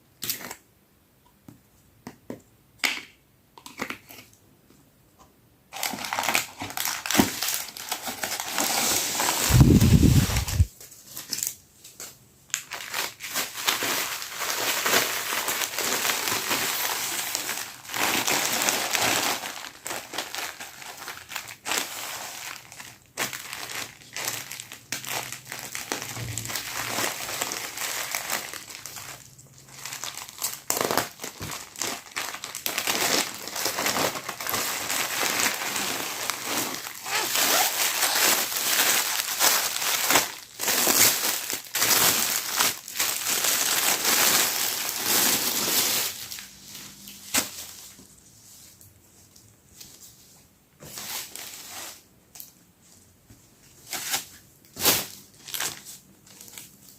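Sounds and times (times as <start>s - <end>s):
plastic packaging crinkling: 5.7s - 48.1s, 53.8s - 56.9s.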